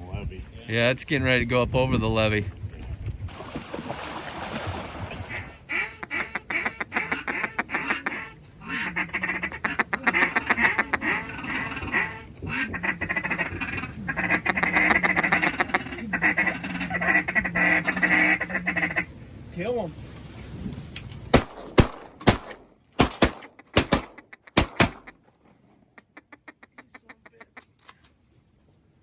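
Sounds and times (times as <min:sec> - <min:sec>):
duck calls quacking: 0:05.2 - 0:19.1, 0:23.3 - 0:25.2, 0:26.0 - 0:27.8.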